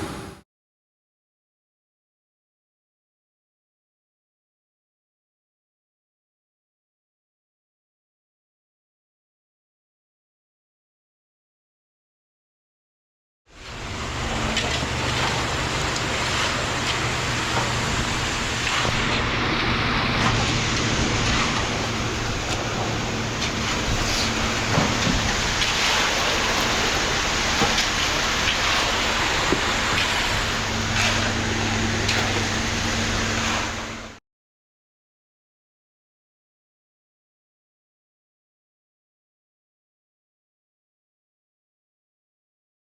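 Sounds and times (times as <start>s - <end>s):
diesel truck engine running: 0.0s - 0.4s, 13.6s - 34.2s
concrete rushing from drum: 13.7s - 34.2s.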